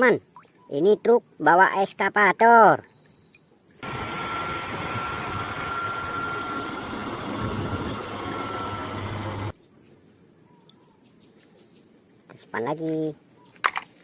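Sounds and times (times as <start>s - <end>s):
thin steady whine: 3.8s - 9.5s
truck engine running: 3.8s - 9.5s.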